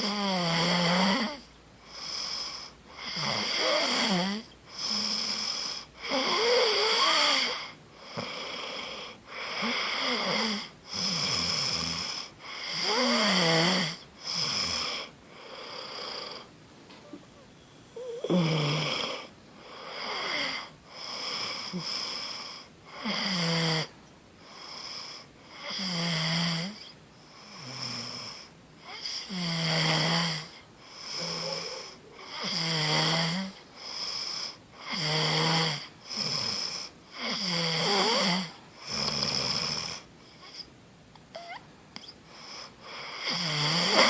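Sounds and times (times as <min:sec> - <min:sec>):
person snoring: 0:00.0 - 0:16.5, 0:17.9 - 0:23.9, 0:24.6 - 0:40.7, 0:42.4 - 0:44.0.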